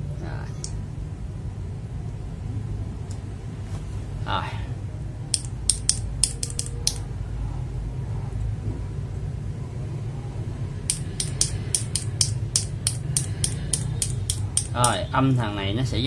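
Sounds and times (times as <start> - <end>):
mechanical keyboard switches clacking: 5.3 - 7.0, 10.9 - 15.0.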